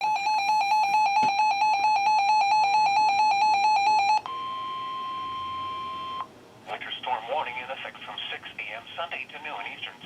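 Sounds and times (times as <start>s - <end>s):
steady warning alarm tone: 0.0s - 6.3s.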